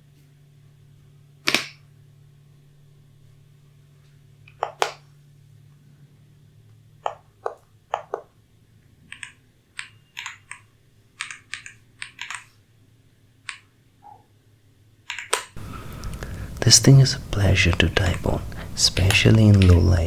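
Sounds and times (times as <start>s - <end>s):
mechanical keyboard clicks: 9.1s - 12.5s, 15.1s - 20.0s.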